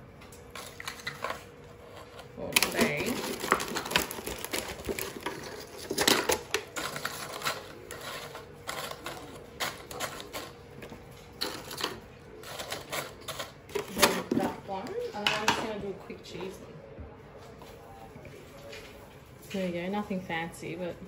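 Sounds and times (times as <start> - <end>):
food pieces clattering into tray: 0.5 - 10.6.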